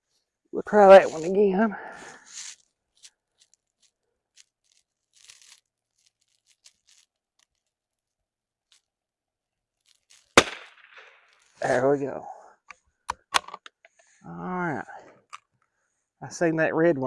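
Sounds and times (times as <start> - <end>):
faint rustles: 0.0 - 8.9.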